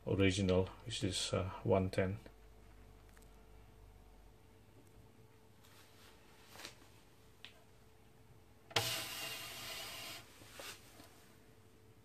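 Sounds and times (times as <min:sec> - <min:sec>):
rubbing scrape: 0:08.8 - 0:11.0.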